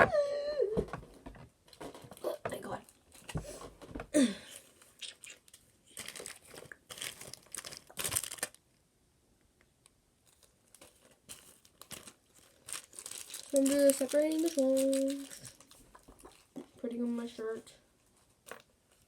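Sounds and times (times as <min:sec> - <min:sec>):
plastic packaging crinkling: 0:04.6 - 0:08.7, 0:10.2 - 0:16.7.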